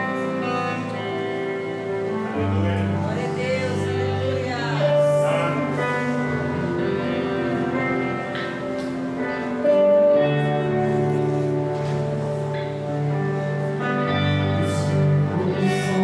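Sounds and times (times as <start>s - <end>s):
slow instrumental worship music: 0.0s - 16.0s.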